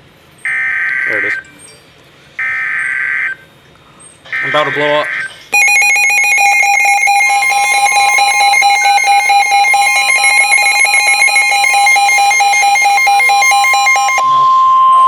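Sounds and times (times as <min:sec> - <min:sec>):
overlapping electronic beeping: 0:04.4 - 0:14.2
weather radio attention tone: 0:04.4 - 0:15.0.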